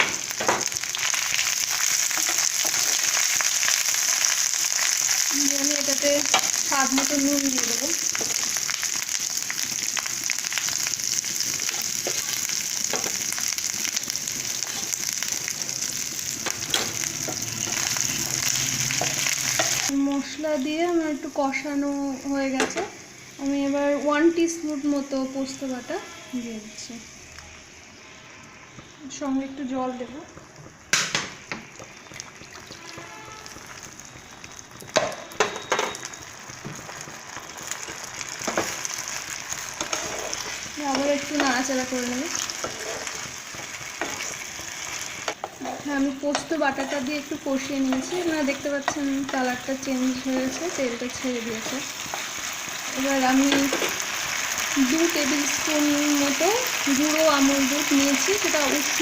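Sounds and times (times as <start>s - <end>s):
vegetables sizzling in hot oil: 0.0s - 59.0s
spatula scraping and knocking pan: 39.8s - 41.6s, 47.8s - 49.5s.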